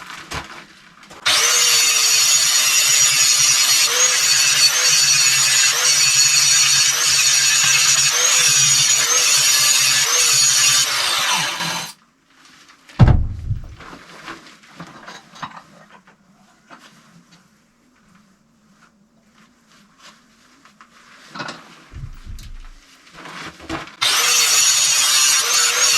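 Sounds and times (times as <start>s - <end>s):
angle grinder grinding steel: 1.3s - 12.0s, 22.0s - 22.8s, 24.0s - 25.9s
heavy metal thud: 13.0s - 13.9s, 22.0s - 22.8s
metal clatter: 22.0s - 22.8s.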